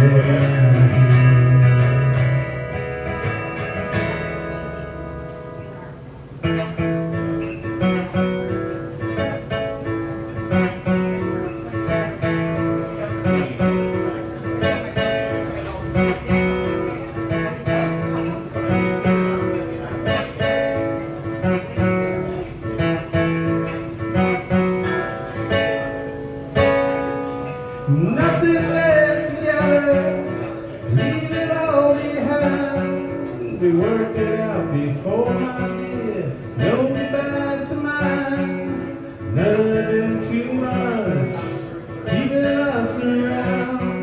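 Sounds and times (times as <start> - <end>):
man singing: 0.0 - 2.9, 27.8 - 44.0
acoustic guitar strumming: 0.0 - 44.0.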